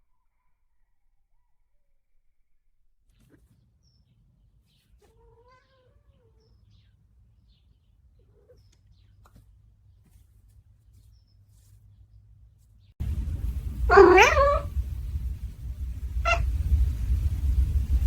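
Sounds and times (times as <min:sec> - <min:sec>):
cat meowing: 0:05.0 - 0:06.5, 0:13.9 - 0:14.7, 0:16.3 - 0:16.5.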